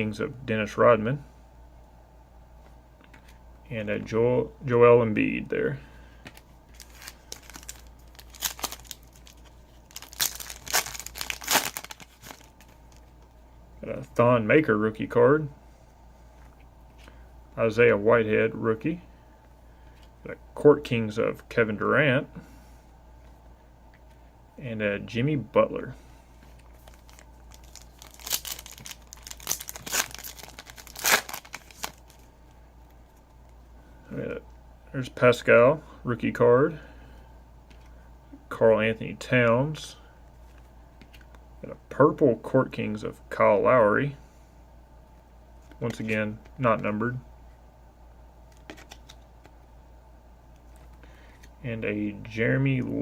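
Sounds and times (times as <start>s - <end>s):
wrapper tearing and crinkling: 6.7s - 13.1s, 26.6s - 32.3s, 48.5s - 49.2s.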